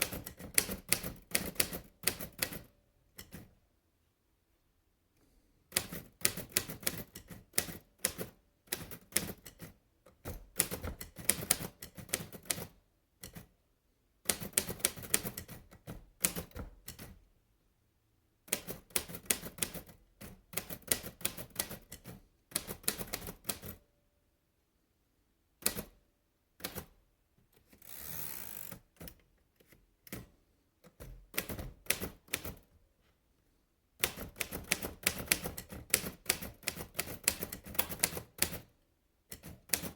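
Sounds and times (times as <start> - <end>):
typewriter key strikes: 34.0 - 38.7.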